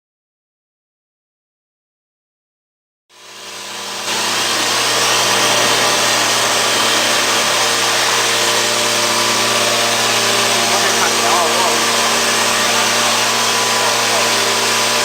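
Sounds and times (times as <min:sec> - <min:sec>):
low machine hum: 0:03.2 - 0:15.0
woodworking machine hiss: 0:03.2 - 0:15.0.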